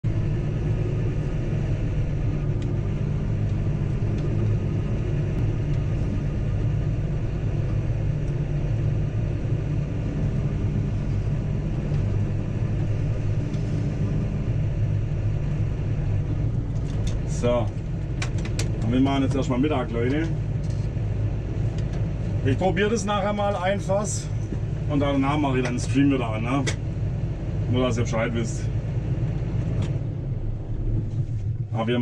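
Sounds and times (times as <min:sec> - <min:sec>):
loud low rumble: 0:00.0 - 0:32.0.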